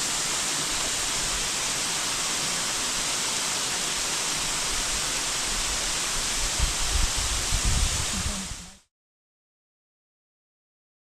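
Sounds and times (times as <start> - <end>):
river rapids rushing: 0.0 - 7.3.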